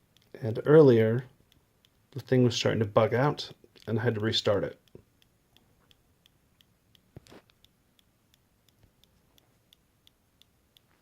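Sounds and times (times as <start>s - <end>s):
faint clicking inside laptop: 4.8s - 11.0s.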